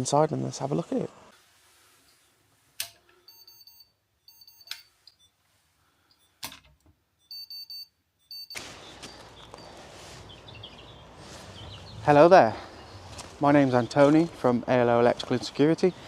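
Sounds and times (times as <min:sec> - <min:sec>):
steady outdoor hiss: 0:00.0 - 0:01.4, 0:08.6 - 0:16.0
short high electronic beeps: 0:07.2 - 0:08.6.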